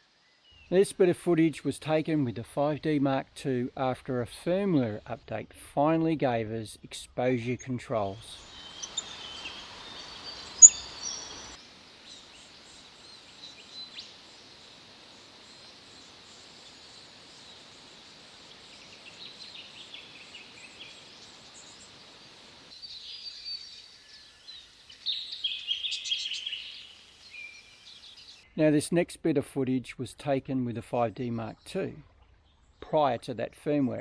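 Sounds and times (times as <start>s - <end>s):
birds chirping: 8.2s - 28.4s.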